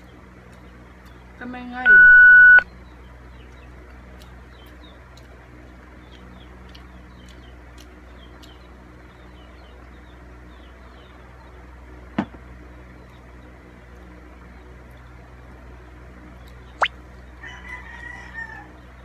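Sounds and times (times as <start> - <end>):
low background hum: 0.0 - 19.0
faint rapid high chirping: 1.8 - 2.6.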